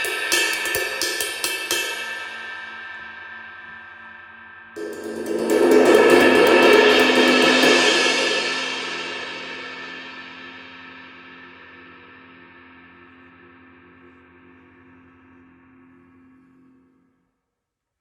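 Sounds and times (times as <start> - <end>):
ride cymbal shimmering wash: 4.8 - 12.8.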